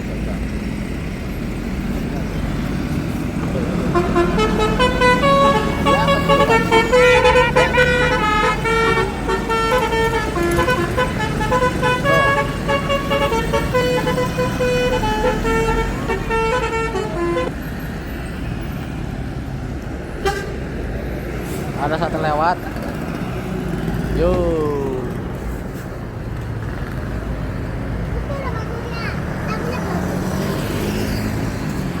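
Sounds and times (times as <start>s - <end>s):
musical air horn playing a tune: 3.8s - 17.5s.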